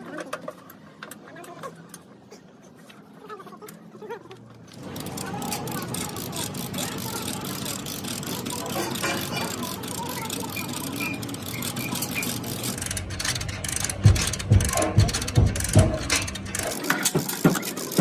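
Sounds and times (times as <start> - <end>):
background noise: 0.0 - 8.2.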